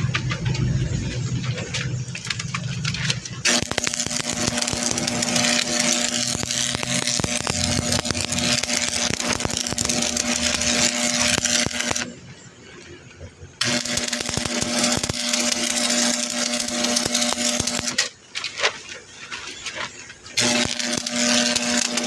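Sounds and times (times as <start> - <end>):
low engine-like hum: 0.0 - 3.4
metalworking tool hissing and crackling: 0.0 - 18.5, 19.6 - 22.0.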